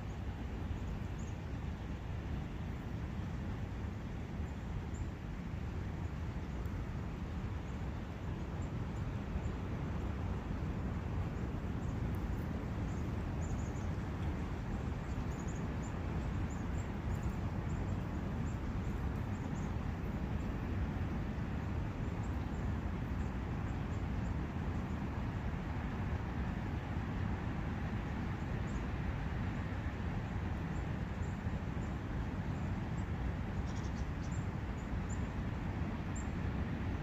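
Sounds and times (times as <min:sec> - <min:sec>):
small birds chirping: 0:11.8 - 0:14.3, 0:15.0 - 0:20.6, 0:33.5 - 0:35.3.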